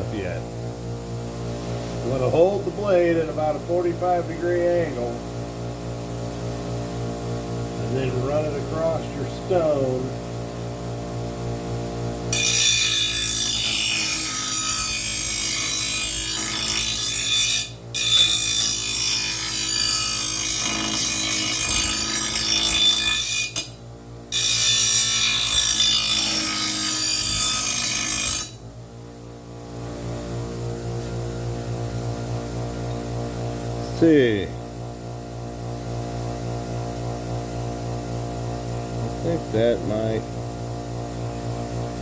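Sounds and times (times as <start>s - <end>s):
grinder motor humming: 11.5s - 42.0s
blade grinding on grinder wheel: 12.3s - 28.6s.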